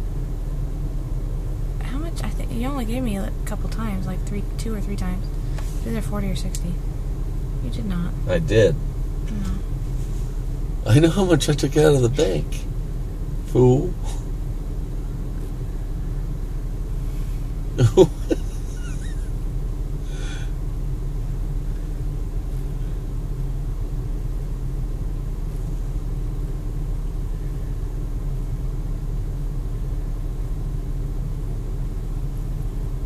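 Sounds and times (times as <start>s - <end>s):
car engine idling: 0.0s - 33.0s
short vocal sound: 17.8s - 18.4s.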